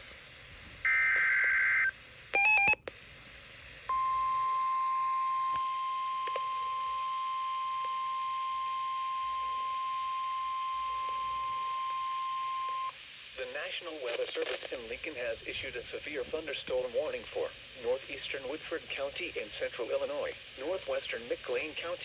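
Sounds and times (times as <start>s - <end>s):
steady warning alarm tone: 0.9s - 2.8s
short patterned beep: 2.4s - 2.8s.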